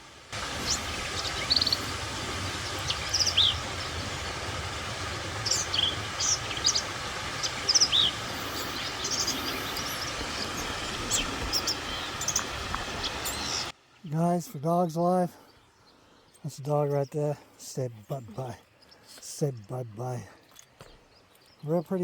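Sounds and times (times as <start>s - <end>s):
distant waterfall rushing: 0.0s - 15.4s
small birds chirping: 0.4s - 22.0s.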